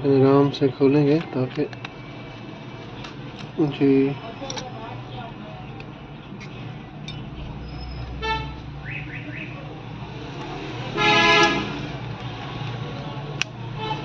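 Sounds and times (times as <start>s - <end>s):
traffic hum: 0.0s - 14.0s
vehicle horn: 8.1s - 8.6s, 10.9s - 11.9s, 13.8s - 14.0s.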